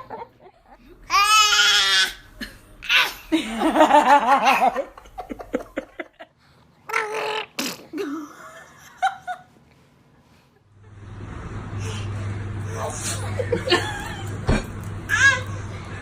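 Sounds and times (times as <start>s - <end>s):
person laughing: 13.0s - 14.7s.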